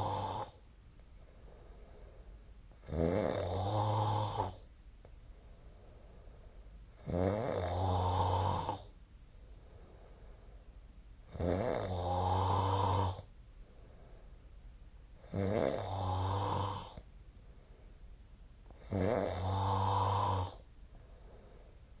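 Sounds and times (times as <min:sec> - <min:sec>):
person snoring: 0:00.0 - 0:00.6, 0:02.8 - 0:04.6, 0:07.0 - 0:08.9, 0:11.3 - 0:13.3, 0:15.2 - 0:17.0, 0:18.8 - 0:20.6.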